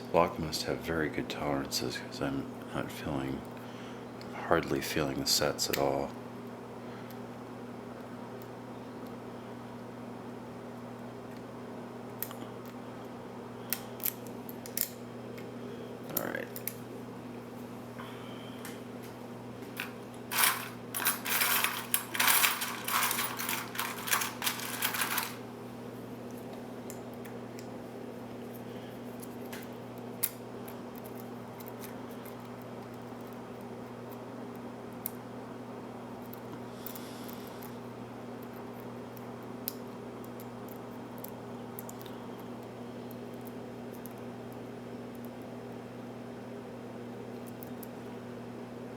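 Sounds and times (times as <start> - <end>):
steady electrical hum: 0.0 - 48.9
lock picks clicking and scraping: 19.8 - 25.4.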